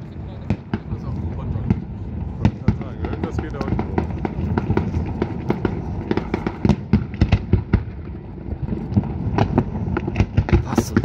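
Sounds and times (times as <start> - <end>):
fireworks bangs and crackling pops: 0.0 - 11.0
low rumble: 0.0 - 11.0.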